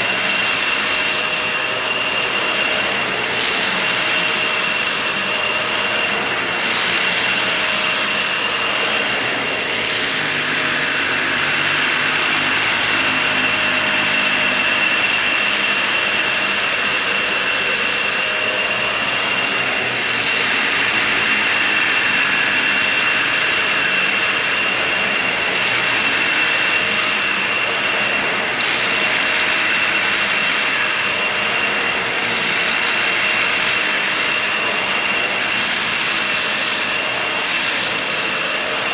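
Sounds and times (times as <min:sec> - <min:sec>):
vacuum cleaner running on a rug: 0:00.0 - 0:38.9.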